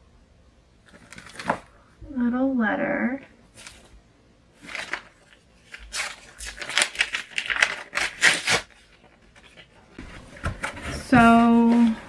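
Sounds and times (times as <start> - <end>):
paper rustling and crinkling: 0.8 - 1.8, 3.5 - 4.0, 4.6 - 12.0.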